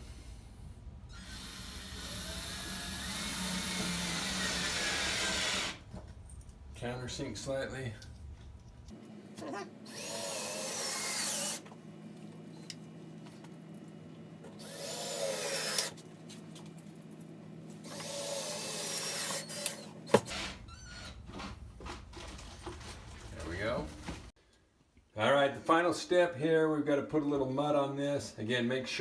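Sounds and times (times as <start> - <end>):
power drill driving screws: 1.1 - 5.9, 9.9 - 11.7, 14.6 - 16.0, 17.8 - 20.6.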